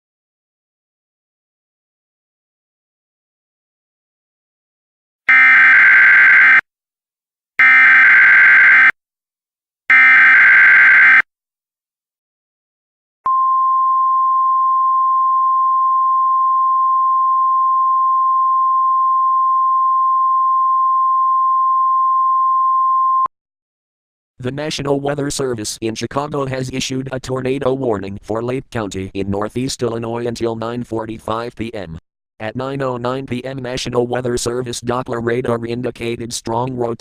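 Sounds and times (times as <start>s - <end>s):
steady warning tone: 5.3s - 6.6s, 7.6s - 9.0s, 9.9s - 11.2s.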